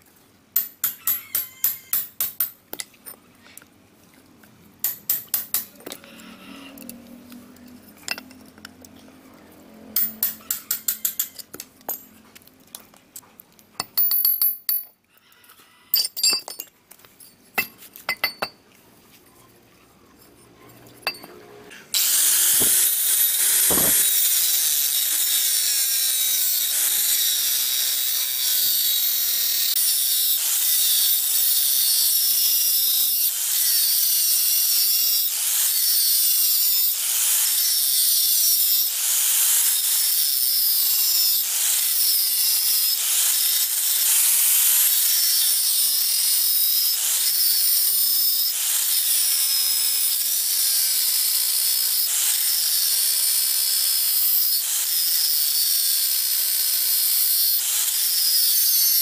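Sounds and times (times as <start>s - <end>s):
power tool motor: 5.8s - 8.2s, 21.9s - 59.0s.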